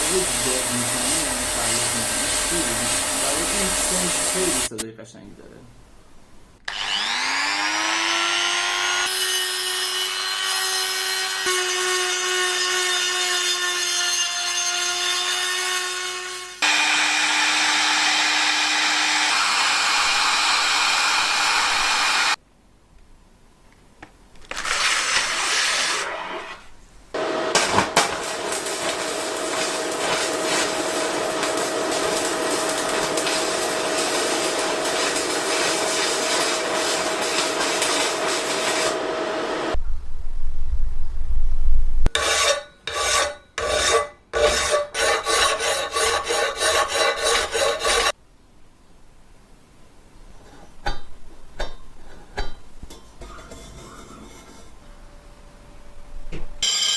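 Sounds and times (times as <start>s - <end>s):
electric motor whining: 6.7s - 9.1s, 16.6s - 22.4s
peeler grinding and rubbing: 28.6s - 39.0s, 42.1s - 48.2s.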